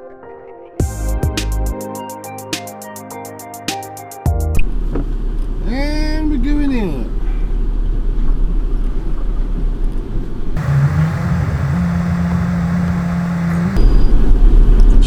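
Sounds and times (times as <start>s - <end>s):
low rumbling road noise: 4.6s - 14.9s
steady low hum: 10.6s - 13.8s
vehicle engine running: 10.6s - 14.0s.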